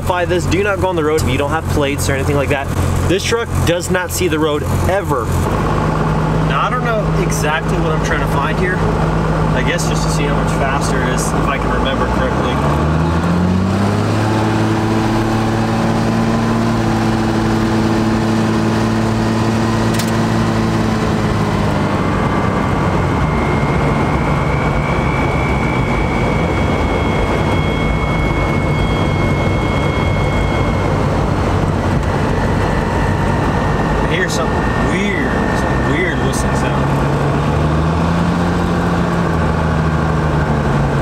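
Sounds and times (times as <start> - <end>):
diesel engine running: 0.0 - 41.0
sharp click: 19.9 - 20.2
faint high whistle: 24.8 - 31.1.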